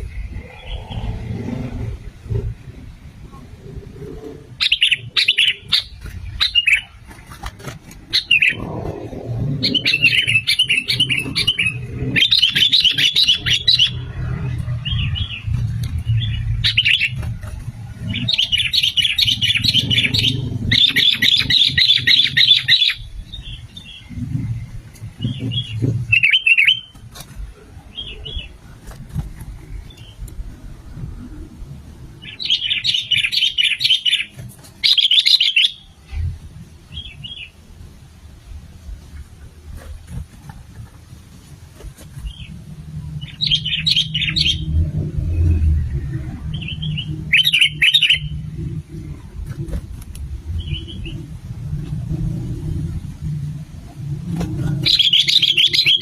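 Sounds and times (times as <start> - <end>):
low background rumble: 0.0 - 56.0
bird chattering song: 4.6 - 7.0, 8.1 - 8.9, 9.6 - 17.4, 18.0 - 24.6, 25.2 - 26.9, 32.2 - 36.0, 43.2 - 48.5, 50.5 - 51.2, 54.8 - 56.0.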